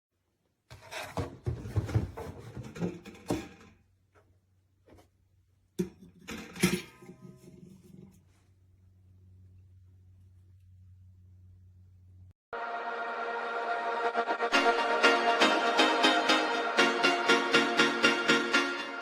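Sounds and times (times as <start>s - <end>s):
clattering knocks and bumps: 0.8s - 3.7s.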